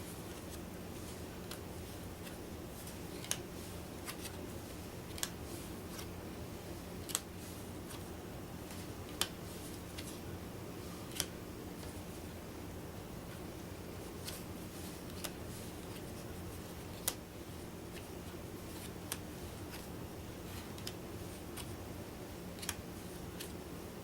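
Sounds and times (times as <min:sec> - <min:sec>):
faint steady hum: 0:00.0 - 0:24.0
playing cards clicking on table: 0:08.7 - 0:09.4.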